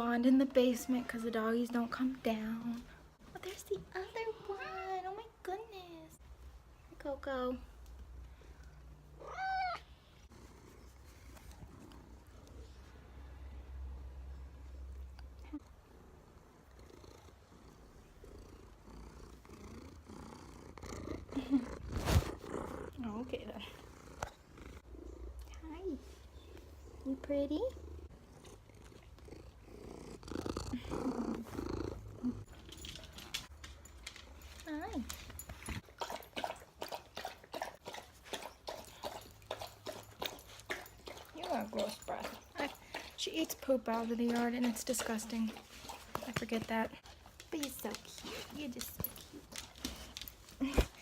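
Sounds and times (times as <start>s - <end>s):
cat purring softly: 14.2s - 32.6s
dog licking: 35.8s - 50.5s.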